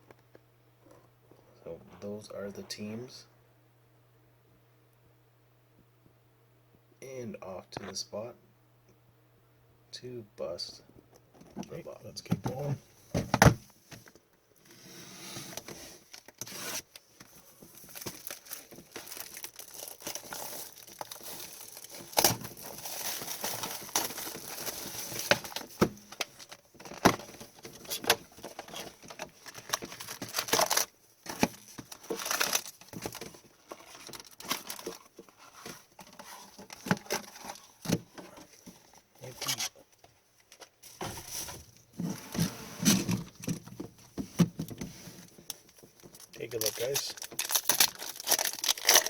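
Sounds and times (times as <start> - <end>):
foil wrappers tearing and crinkling: 17.8 - 27.1, 27.8 - 35.1, 46.0 - 49.0.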